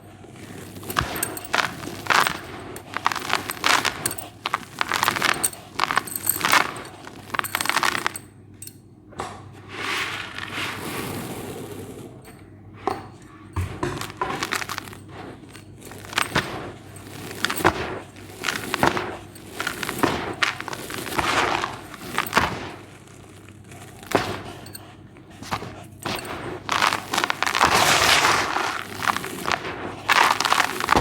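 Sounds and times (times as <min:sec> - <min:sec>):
cement crumbling: 0:00.6 - 0:08.2, 0:13.6 - 0:31.0.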